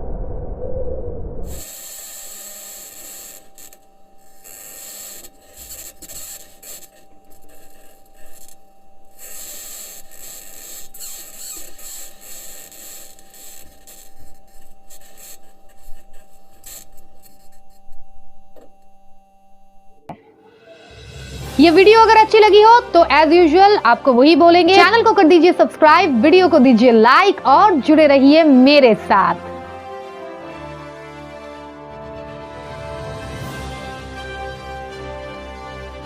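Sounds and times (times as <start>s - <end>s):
faint steady hum: 0.0s - 20.6s.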